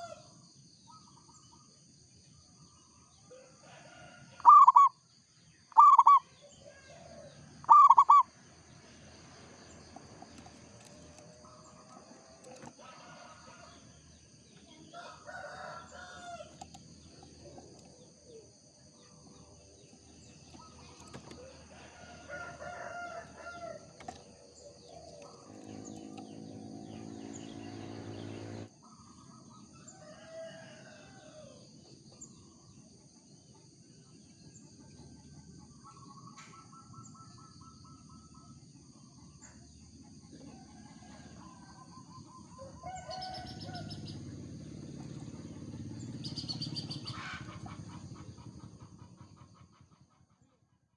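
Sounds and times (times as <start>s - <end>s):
doves cooing: 3.9s - 4.9s, 5.7s - 8.3s, 14.9s - 28.7s, 42.3s - 49.9s
long low bird call: 4.4s - 5.0s, 5.7s - 8.3s
trilled bird call: 4.4s - 5.1s, 5.7s - 8.4s, 46.0s - 50.0s.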